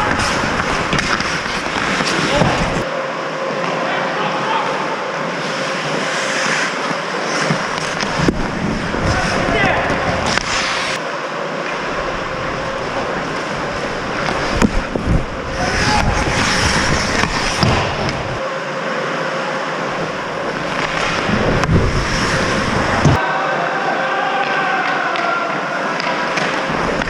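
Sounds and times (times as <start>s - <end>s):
stick hitting puck: 0.0s - 2.8s
skate blades scraping ice: 0.0s - 2.9s, 5.2s - 11.0s, 11.6s - 18.4s, 19.8s - 23.2s.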